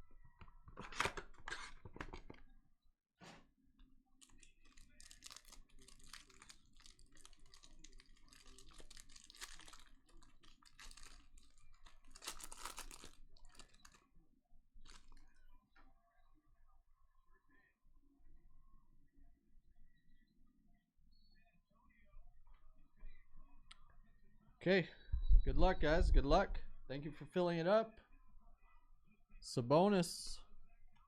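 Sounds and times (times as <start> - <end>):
wrapper tearing and crinkling: 4.2 - 14.0, 14.8 - 15.3.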